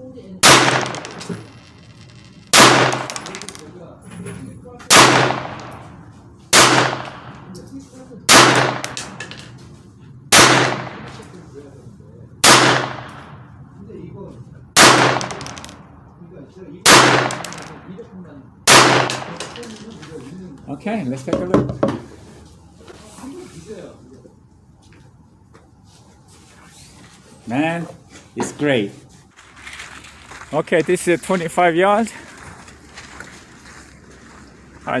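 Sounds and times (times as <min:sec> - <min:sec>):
pistol shots echoing: 0:00.4 - 0:01.5, 0:02.5 - 0:03.6, 0:04.9 - 0:05.9, 0:06.5 - 0:07.5, 0:08.3 - 0:09.2, 0:10.3 - 0:11.3, 0:12.4 - 0:13.4, 0:14.8 - 0:15.8, 0:16.8 - 0:17.9, 0:18.7 - 0:19.7.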